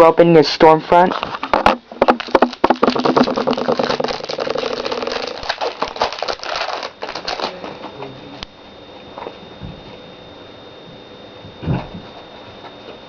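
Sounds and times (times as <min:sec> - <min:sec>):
foil pack crinkling: 0:00.9 - 0:07.7.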